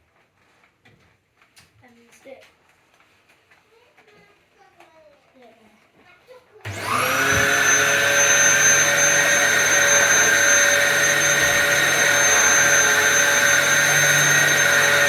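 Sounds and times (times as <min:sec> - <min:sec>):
vacuum cleaner motor whining: 0:06.6 - 0:15.0.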